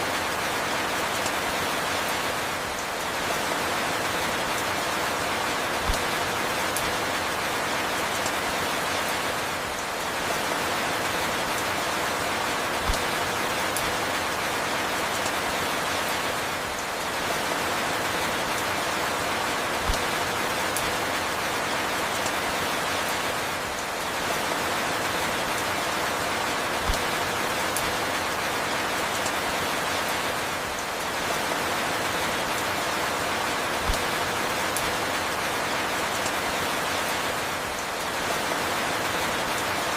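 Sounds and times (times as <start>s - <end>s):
steady rainfall: 0.0s - 39.9s.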